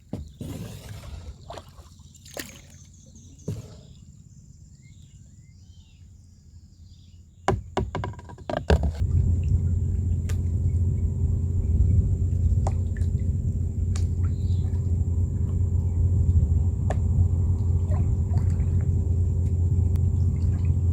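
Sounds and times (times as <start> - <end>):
water sloshing: 0.0 - 4.2, 8.1 - 20.9
boat motor humming: 0.0 - 6.0, 7.5 - 20.9
knocks: 7.5 - 9.0.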